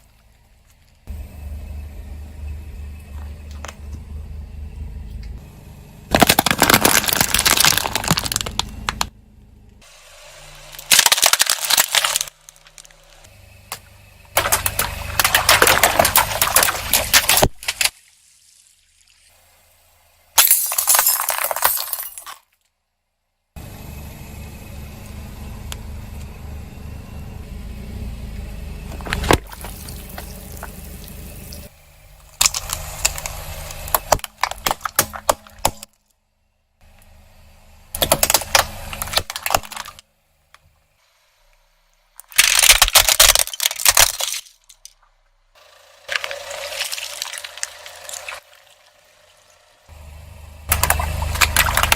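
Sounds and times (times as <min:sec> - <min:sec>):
low rumble: 0:00.0 - 0:10.8, 0:23.6 - 0:34.0
objects crushed under car tyre: 0:06.1 - 0:09.1, 0:10.7 - 0:13.3, 0:14.3 - 0:17.9, 0:20.4 - 0:22.6, 0:28.9 - 0:36.1, 0:38.0 - 0:40.1, 0:42.2 - 0:45.1, 0:46.1 - 0:48.5
sharp crack: 0:42.2 - 0:45.0.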